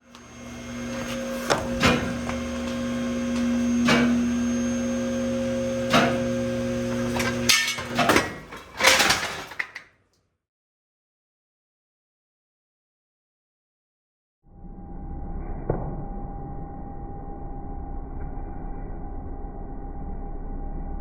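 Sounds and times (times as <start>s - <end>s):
hydraulic pump motor humming: 0.0s - 9.5s
loud metal clanks and clatter: 5.9s - 9.8s.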